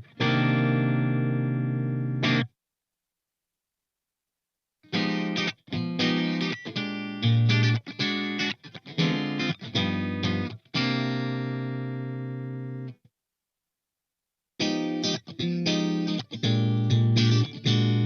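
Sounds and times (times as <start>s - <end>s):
electric guitar chords and notes: 0.0s - 2.5s, 4.9s - 13.0s, 14.6s - 18.0s.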